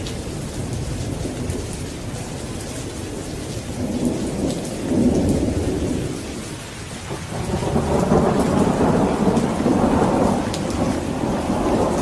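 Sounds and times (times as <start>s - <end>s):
steady rain: 0.0s - 12.0s
rumble of thunder: 3.7s - 12.0s.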